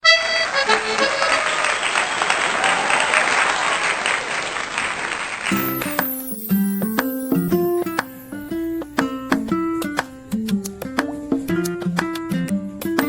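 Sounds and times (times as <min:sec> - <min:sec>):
crowd applause: 0:00.0 - 0:06.1
plucked-string music: 0:05.5 - 0:13.0.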